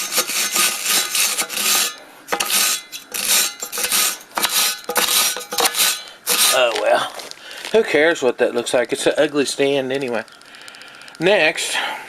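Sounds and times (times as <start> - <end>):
hand tool scraping steel: 0.0 - 6.8.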